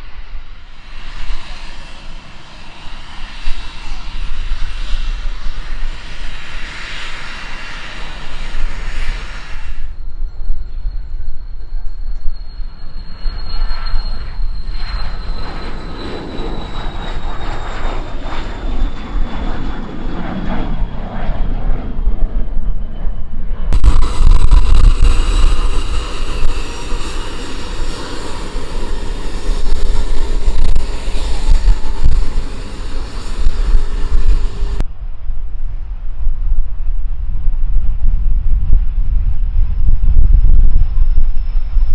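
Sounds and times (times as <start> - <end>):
aircraft steady high tones: 0.0 - 34.8
aircraft engine whine: 0.0 - 41.9
steady engine rumble: 23.7 - 34.9.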